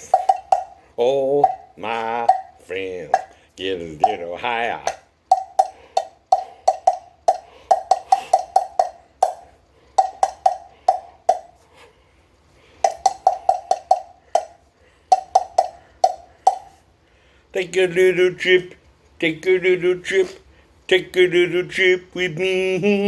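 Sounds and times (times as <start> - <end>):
cowbell struck in quick rhythm: 0.0 - 0.8, 1.4 - 3.3, 4.9 - 11.5, 12.9 - 16.8.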